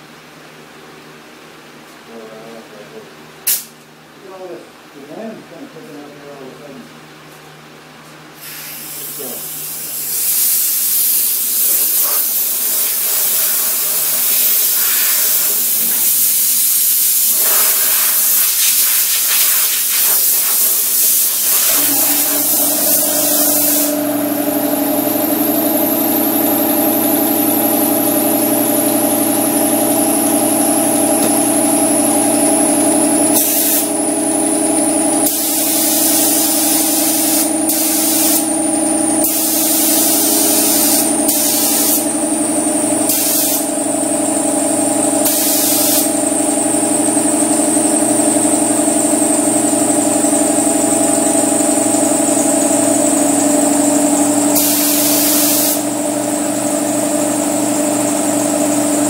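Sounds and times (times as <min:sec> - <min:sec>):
air compressor humming: 0:03.4 - 0:03.8, 0:08.3 - 0:59.0
spray gun hissing: 0:08.4 - 0:24.6, 0:33.4 - 0:33.9, 0:35.2 - 0:38.5, 0:39.2 - 0:42.1, 0:43.1 - 0:43.7, 0:45.2 - 0:46.1, 0:54.6 - 0:55.8.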